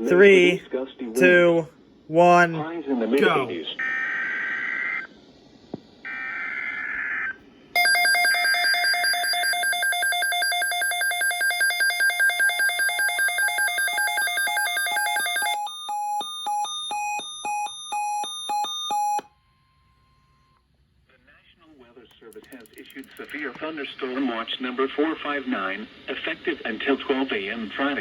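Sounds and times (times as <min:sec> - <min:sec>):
electronic alarm beeps: 0:07.8 - 0:20.6.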